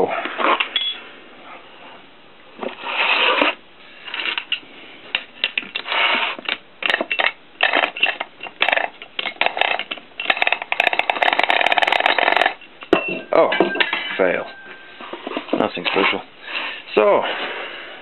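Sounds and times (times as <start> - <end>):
metal scraping and clicking: 5.2 - 12.9.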